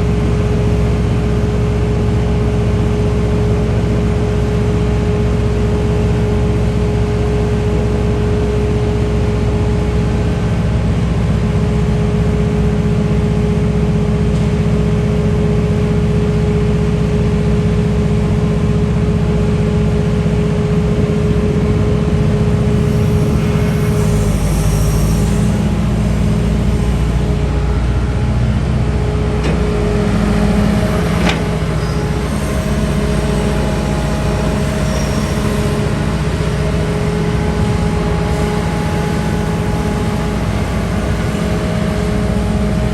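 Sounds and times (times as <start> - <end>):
diesel engine running: 20.8 - 42.9
steady whine: 21.9 - 42.9.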